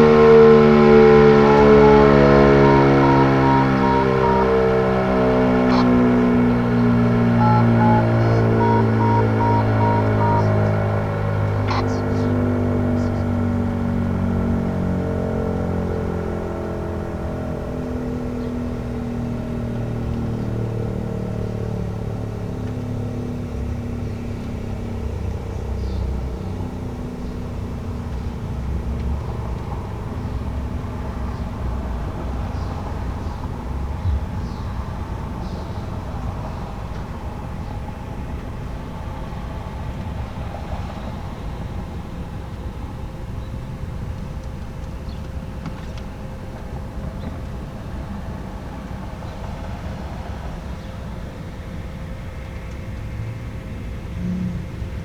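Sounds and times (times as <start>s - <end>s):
siren winding down: 0.0s - 16.0s.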